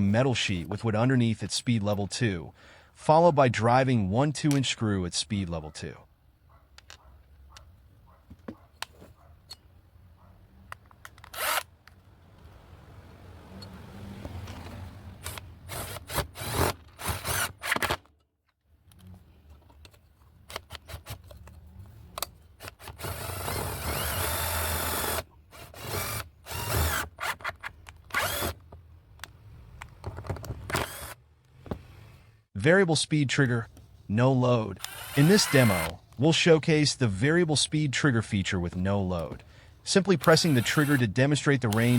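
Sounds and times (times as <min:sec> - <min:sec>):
impact driver driving screws: 0:11.0 - 0:11.7, 0:15.2 - 0:18.0, 0:22.6 - 0:28.6, 0:30.6 - 0:31.2, 0:34.8 - 0:36.0, 0:40.2 - 0:41.9.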